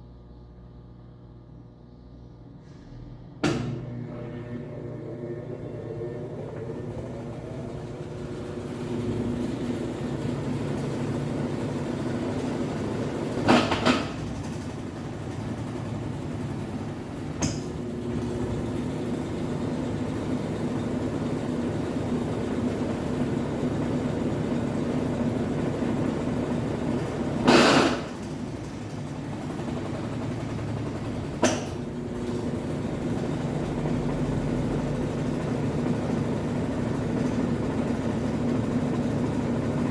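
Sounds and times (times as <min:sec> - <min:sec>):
washing machine motor hum: 0:00.0 - 0:39.9
loud knocks in washing machine: 0:13.4 - 0:14.4, 0:27.4 - 0:28.5, 0:31.1 - 0:31.9.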